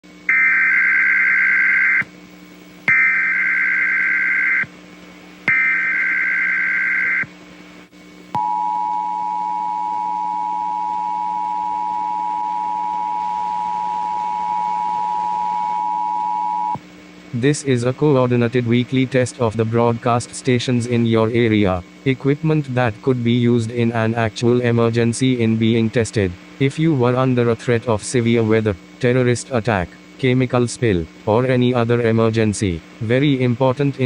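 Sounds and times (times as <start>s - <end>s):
two-tone attention signal: 8.4s - 16.8s.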